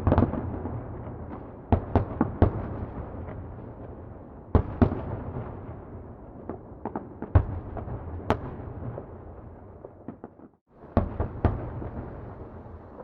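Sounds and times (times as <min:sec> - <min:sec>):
fireworks bangs and pops: 0:00.0 - 0:13.0.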